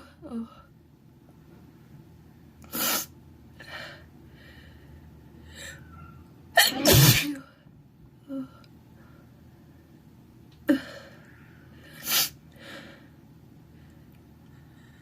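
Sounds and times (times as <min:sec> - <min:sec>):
man sneezing: 0:06.6 - 0:07.4.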